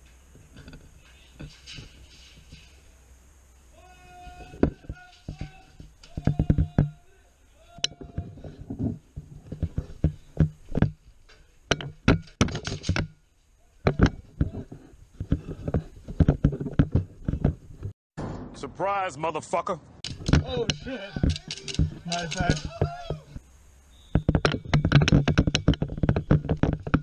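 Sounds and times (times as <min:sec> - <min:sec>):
sharp clicks and knocks: 0:04.4 - 0:07.0, 0:07.8 - 0:18.4, 0:20.0 - 0:23.5, 0:24.1 - 0:27.0.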